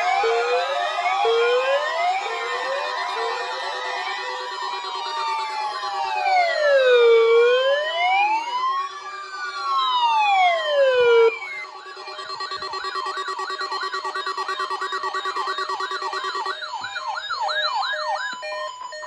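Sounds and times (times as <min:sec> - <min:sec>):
electronic sirens wailing: 0:00.0 - 0:19.0.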